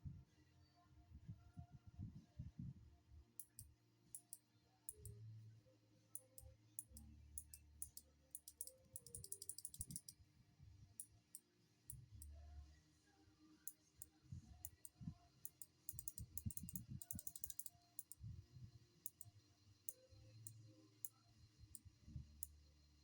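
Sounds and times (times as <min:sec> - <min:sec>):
clicky keyboard key presses: 0:15.9 - 0:18.1.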